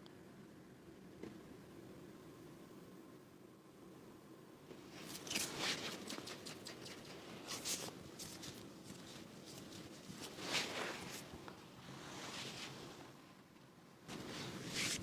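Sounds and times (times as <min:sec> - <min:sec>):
hands rubbing and rustling: 0:04.8 - 0:13.2, 0:14.1 - 0:15.0.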